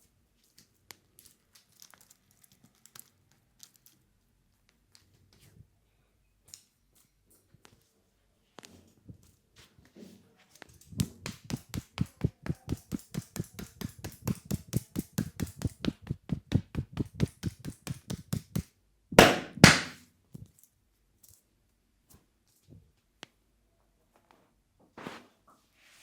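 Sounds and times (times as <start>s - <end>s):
hand-tapping head massage: 11.0s - 20.0s
loud hand hits: 19.2s - 20.0s.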